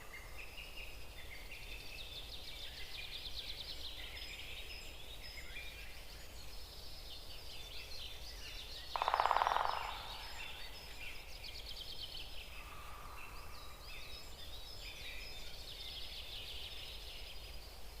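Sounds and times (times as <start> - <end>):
small birds chirping and singing: 0.0 - 18.0
loud rapid rattling bird call: 8.9 - 10.2.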